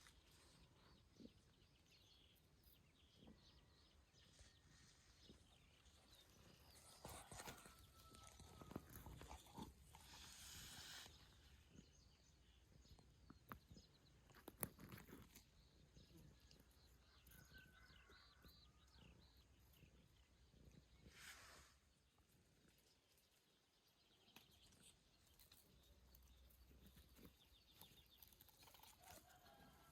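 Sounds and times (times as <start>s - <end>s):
faint birds chirping: 0.0s - 29.9s
hissy rustle: 10.0s - 11.5s.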